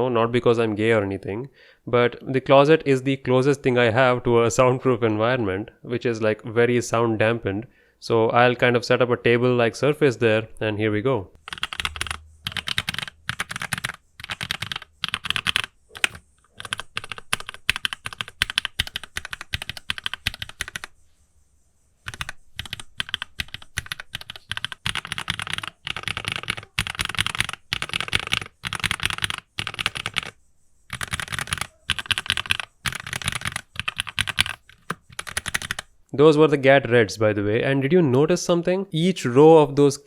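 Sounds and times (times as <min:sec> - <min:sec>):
mechanical keyboard typing: 0:11.5 - 0:20.9, 0:22.1 - 0:35.9.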